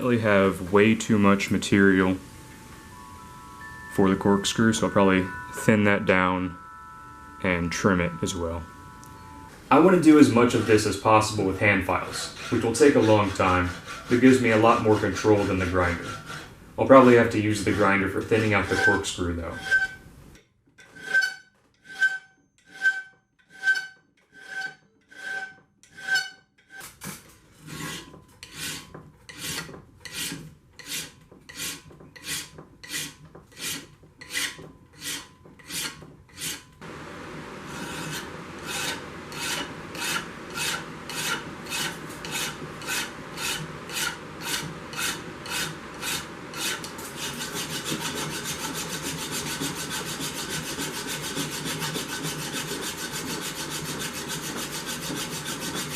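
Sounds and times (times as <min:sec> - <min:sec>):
hand file rasping on steel: 0:09.8 - 0:20.0, 0:20.8 - 0:26.9, 0:27.6 - 0:36.7, 0:37.7 - 0:55.9.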